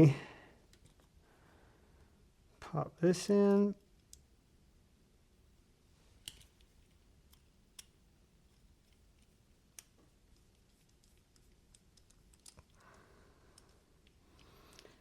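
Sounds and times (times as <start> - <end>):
faint metal clicks: 6.2 - 15.0.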